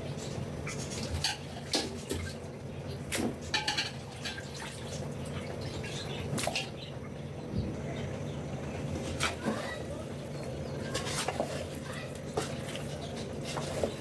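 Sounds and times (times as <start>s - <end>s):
steady low hum: 0.0s - 14.0s
utensils clinking against pot: 3.4s - 4.6s.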